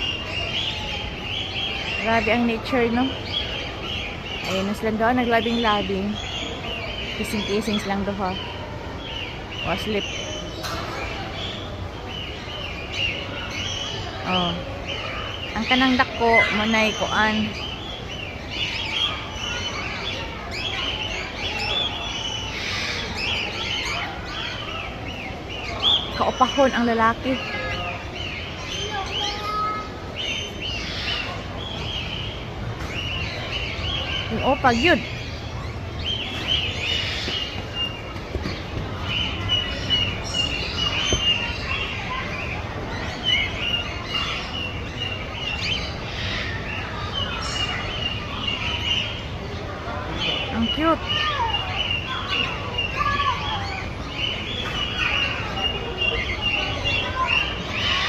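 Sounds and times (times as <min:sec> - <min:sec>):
small birds chirping: 0:00.0 - 0:58.0.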